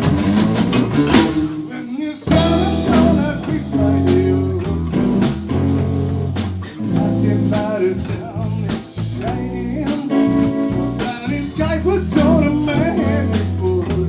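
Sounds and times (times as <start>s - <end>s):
drum and cymbal hits: 0.0s - 9.2s
blues band playing: 0.0s - 14.0s.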